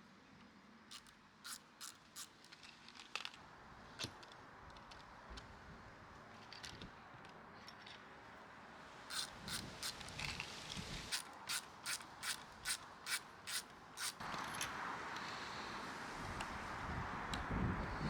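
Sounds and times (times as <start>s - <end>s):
sharp mechanical clicks: 0.9s - 2.4s, 9.1s - 10.0s, 11.1s - 14.2s.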